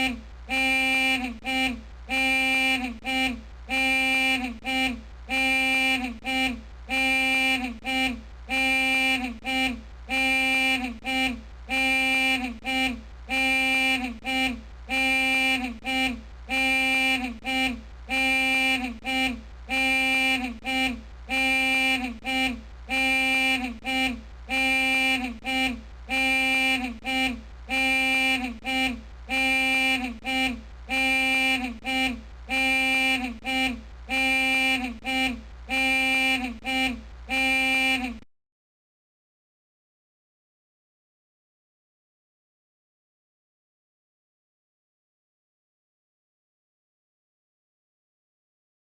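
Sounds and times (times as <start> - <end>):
car horn or alarm sounding: 0.0 - 38.2.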